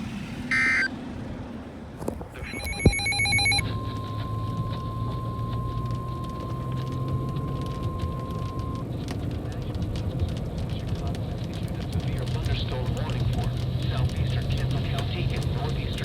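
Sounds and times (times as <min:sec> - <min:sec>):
data tones: 0:00.5 - 0:00.9, 0:02.4 - 0:08.8
rapid electronic beeping: 0:00.5 - 0:00.9, 0:02.4 - 0:08.8
steady warning alarm tone: 0:00.5 - 0:00.9, 0:02.4 - 0:08.8.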